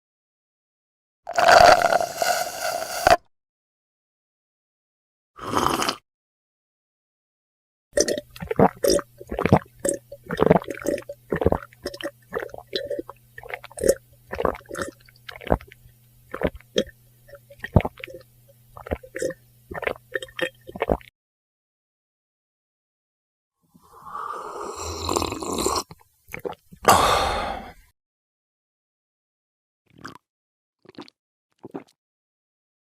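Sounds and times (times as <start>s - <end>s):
person gulping and swallowing: 8.0s - 18.2s, 18.8s - 21.1s, 23.9s - 27.8s, 29.9s - 30.2s, 30.8s - 32.0s.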